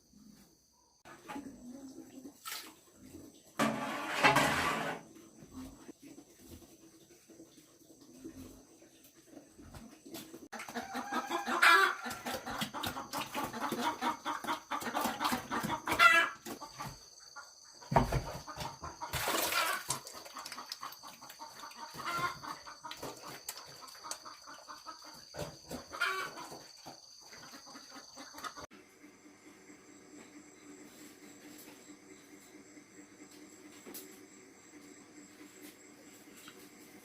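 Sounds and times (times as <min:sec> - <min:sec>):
chickens clucking: 0:05.3 - 0:28.7.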